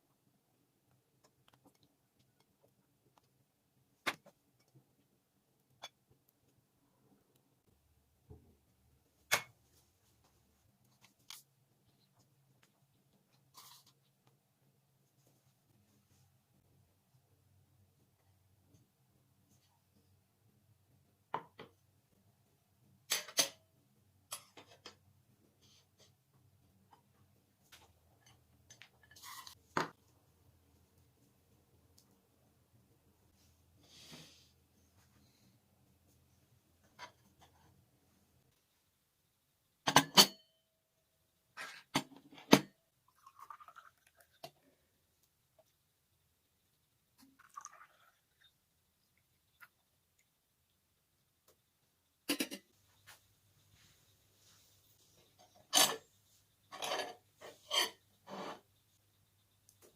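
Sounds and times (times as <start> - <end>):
soft scraping and rustling: 13.3 - 14.1, 56.2 - 58.8.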